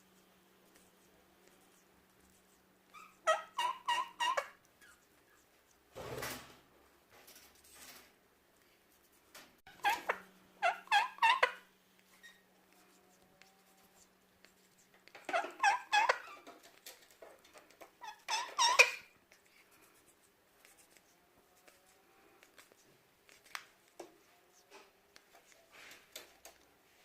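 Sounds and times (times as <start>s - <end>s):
parakeet chirping: 2.9s - 5.0s, 9.7s - 12.5s, 15.2s - 16.4s, 18.0s - 19.1s.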